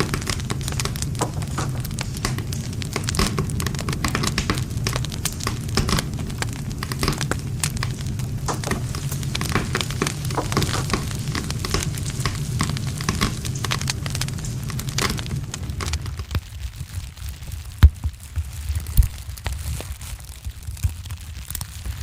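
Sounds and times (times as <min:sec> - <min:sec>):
low steady rumble: 0:00.0 - 0:16.3
campfire crackling: 0:00.0 - 0:22.0.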